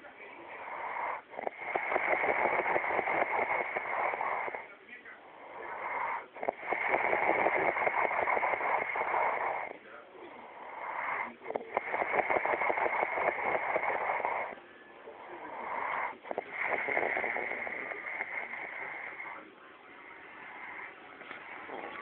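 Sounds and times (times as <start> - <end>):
person snoring: 0.0 - 19.5, 20.4 - 22.0.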